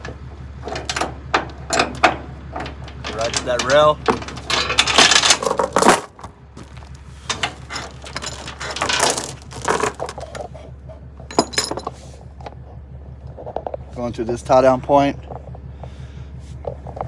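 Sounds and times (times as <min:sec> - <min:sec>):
chain links clinking and rattling: 0:02.9 - 0:06.7, 0:07.6 - 0:10.5, 0:11.3 - 0:12.0.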